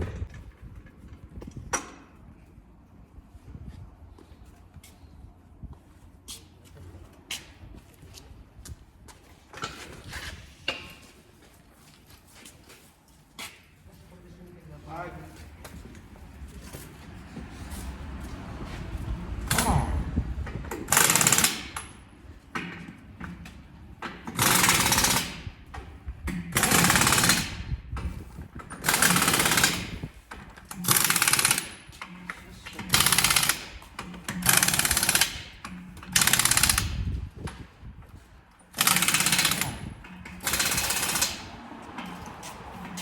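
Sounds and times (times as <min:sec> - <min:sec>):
pneumatic impact wrench hammering: 0:19.4 - 0:22.0, 0:22.6 - 0:37.6, 0:38.7 - 0:42.2.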